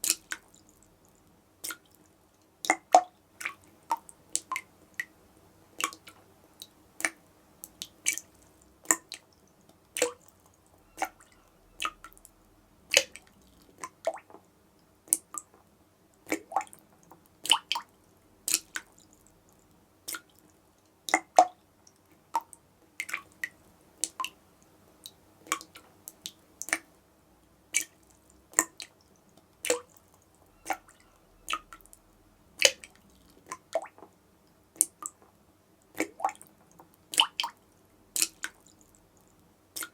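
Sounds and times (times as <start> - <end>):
tap dripping into water: 2.6 - 5.1, 5.8 - 9.3, 10.0 - 12.2, 21.1 - 21.6, 27.8 - 32.0, 32.6 - 34.2.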